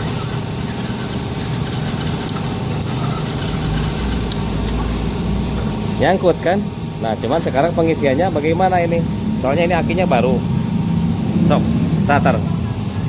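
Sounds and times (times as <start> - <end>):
electric starter: 0.0 - 5.0
deep low hum: 8.2 - 12.9.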